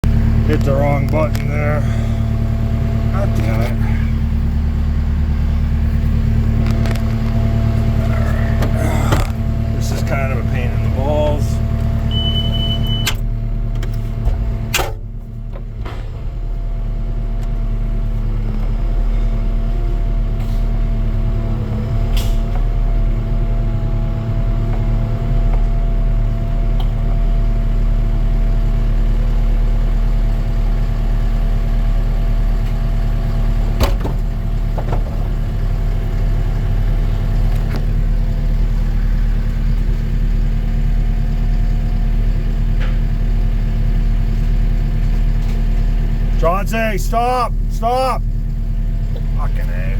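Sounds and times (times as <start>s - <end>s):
hydraulic power unit humming: 0.0s - 15.8s.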